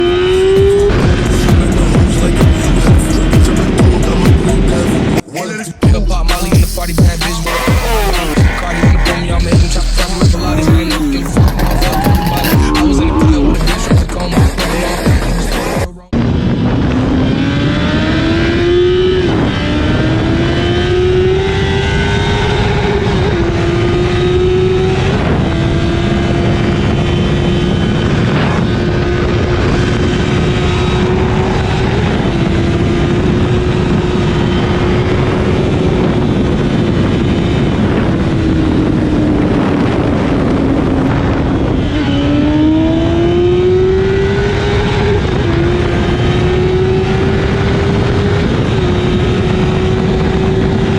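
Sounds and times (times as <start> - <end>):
motorcycle engine accelerating: 0.0 - 5.2, 5.8 - 50.9
wind rush: 0.0 - 5.2, 6.5 - 50.9.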